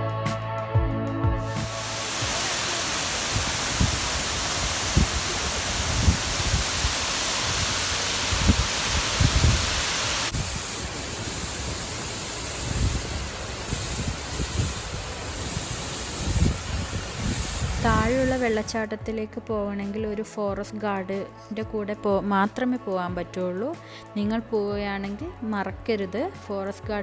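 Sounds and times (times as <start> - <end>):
waterfall rushing: 1.5 - 18.8
wind buffeting microphone: 1.6 - 18.7.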